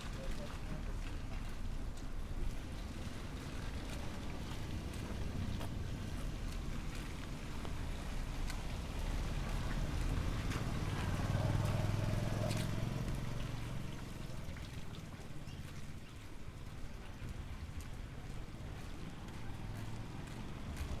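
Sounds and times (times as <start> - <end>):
vehicle engine passing by: 7.8 - 14.9.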